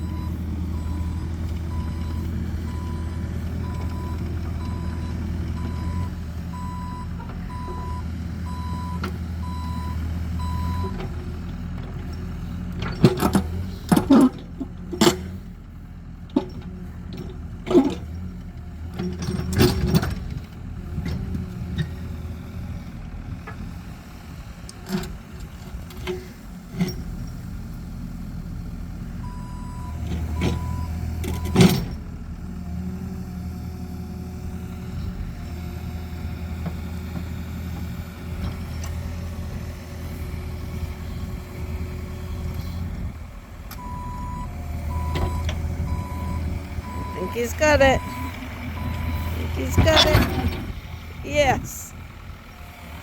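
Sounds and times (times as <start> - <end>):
excavator diesel engine: 0.0 - 53.0
travel alarm beeping: 47.9 - 49.3.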